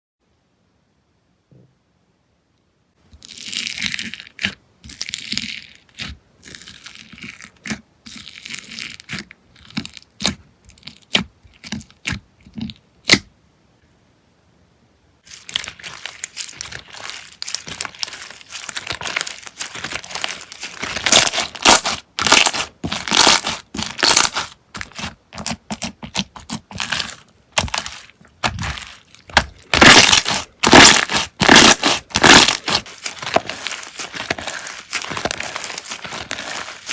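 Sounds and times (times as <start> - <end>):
slime crackling and popping: 15.2 - 36.9.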